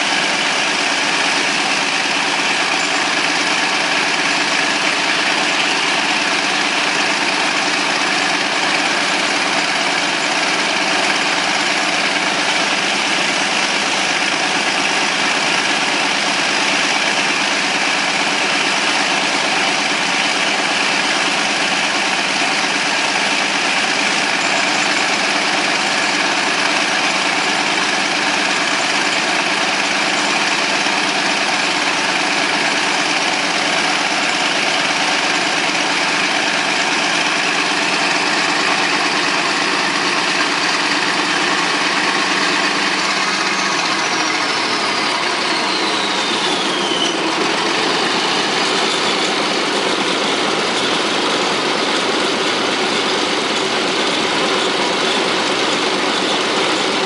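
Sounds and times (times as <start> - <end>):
diesel engine running: 0.0 - 57.0.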